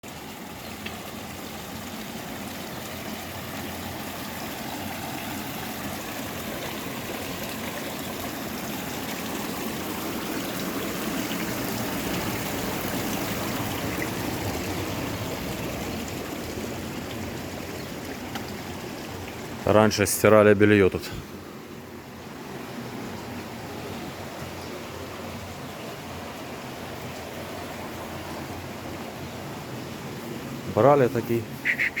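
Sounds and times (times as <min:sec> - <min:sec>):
washing machine water rushing: 0:01.2 - 0:19.7.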